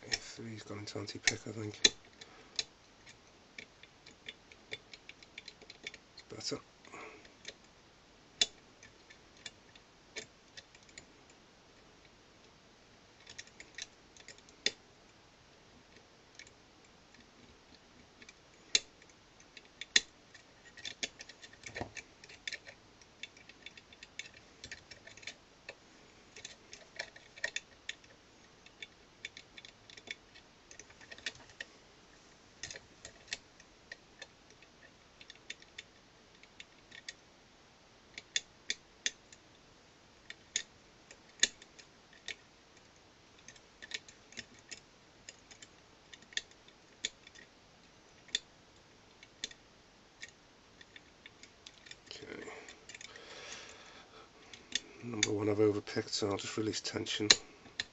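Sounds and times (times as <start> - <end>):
lock pick clicking and scraping: 1.3 - 6.0, 13.2 - 14.8, 15.9 - 31.7, 32.6 - 37.2, 40.2 - 47.6, 49.1 - 49.6, 50.2 - 52.1, 52.7 - 53.2, 54.4 - 55.4.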